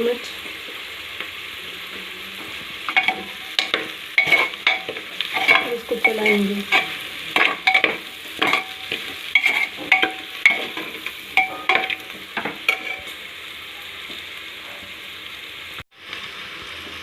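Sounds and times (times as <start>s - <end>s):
vegetables sizzling in oil: 0.0s - 17.0s
spoon scraping a pot: 2.9s - 13.2s.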